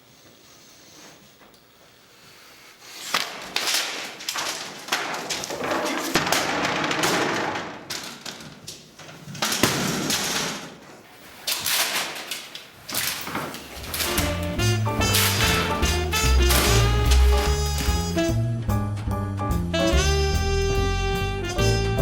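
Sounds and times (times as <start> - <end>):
rough noisy rustling: 11.1 - 18.2
irregular thuds and knocks: 13.2 - 19.7.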